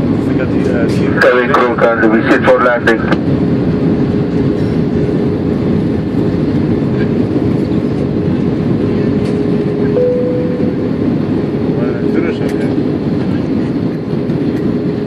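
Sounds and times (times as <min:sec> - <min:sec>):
airliner cabin roar: 0:00.0 - 0:15.0
higher hum: 0:09.4 - 0:12.2
faint steady hum: 0:09.8 - 0:11.5.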